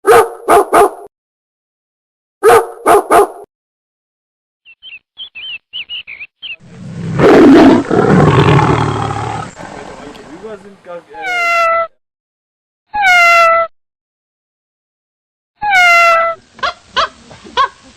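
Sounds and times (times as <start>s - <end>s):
high animal chirps: 4.7s - 9.5s
animal roar: 6.6s - 10.4s.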